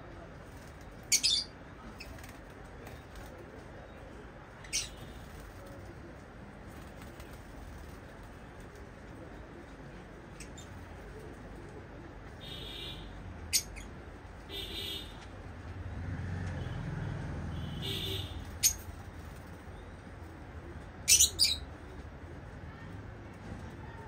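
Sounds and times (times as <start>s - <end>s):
buzzy bird chatter: 4.5s - 9.6s, 17.6s - 22.2s
lovebirds chirping shrilly: 4.6s - 5.2s, 17.8s - 19.0s, 21.1s - 21.7s.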